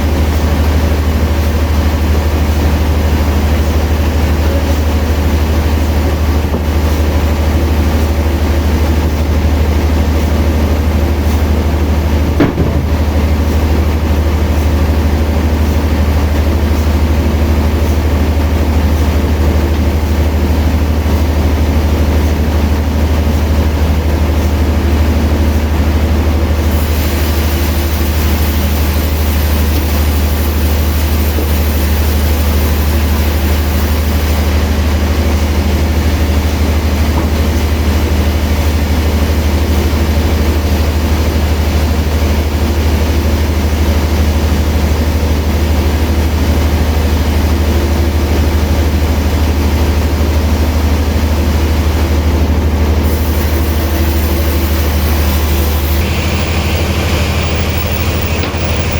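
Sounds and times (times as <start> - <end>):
sharp knock: 12.4 - 13.3
sawmill machinery humming: 24.8 - 39.3, 52.7 - 58.9
bright hiss: 26.7 - 34.6, 53.0 - 58.9.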